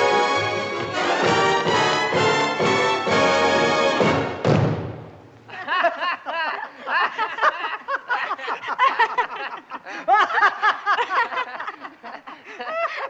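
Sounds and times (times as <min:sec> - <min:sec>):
people laughing: 0:05.5 - 0:13.0.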